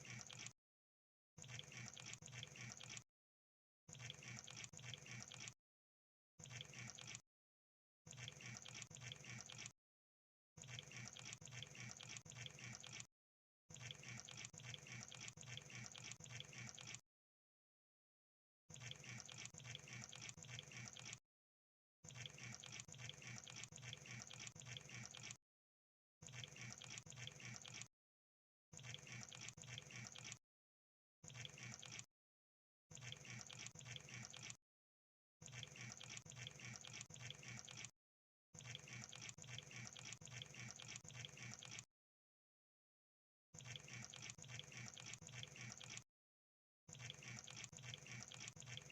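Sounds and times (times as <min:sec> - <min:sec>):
crackle of rapid small clicks: 0:00.0 - 0:00.6, 0:01.4 - 0:03.0, 0:03.9 - 0:05.6, 0:06.4 - 0:07.2, 0:08.1 - 0:09.8, 0:10.6 - 0:13.1, 0:13.8 - 0:17.0, 0:18.7 - 0:21.2, 0:22.1 - 0:25.4, 0:26.3 - 0:27.9, 0:28.8 - 0:30.4, 0:31.3 - 0:32.1, 0:32.9 - 0:34.6, 0:35.4 - 0:37.9, 0:38.6 - 0:41.9, 0:43.6 - 0:46.0, 0:46.9 - 0:48.9.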